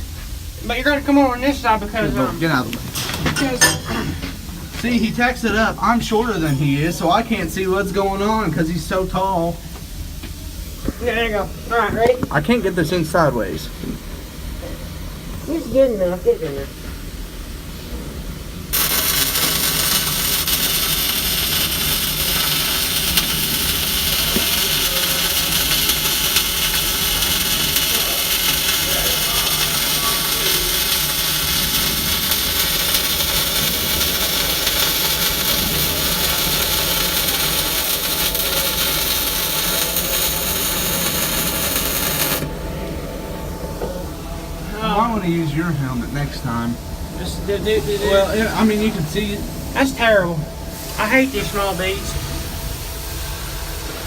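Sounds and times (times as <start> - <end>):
welding arc: 18.7 - 42.6, 44.9 - 54.0.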